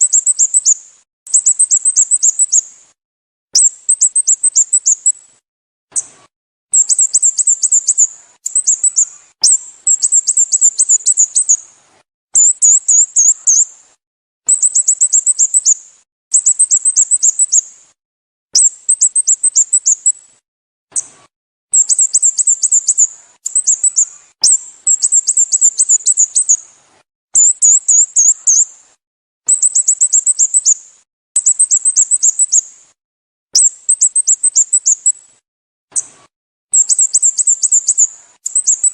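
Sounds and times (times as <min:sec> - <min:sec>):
bulbul chirping: 0:00.0 - 0:02.6, 0:03.6 - 0:05.1, 0:06.7 - 0:11.6, 0:12.4 - 0:13.7, 0:21.7 - 0:26.6, 0:29.5 - 0:30.8, 0:33.6 - 0:35.1, 0:36.7 - 0:38.9.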